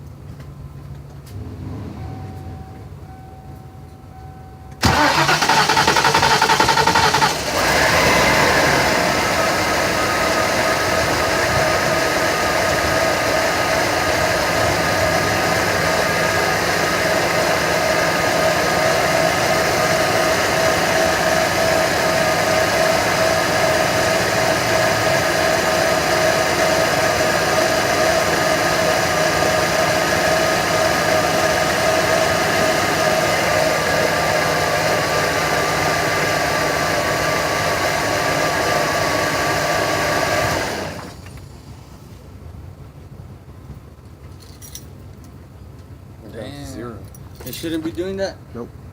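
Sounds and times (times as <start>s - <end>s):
car engine idling: 4.8s - 42.0s.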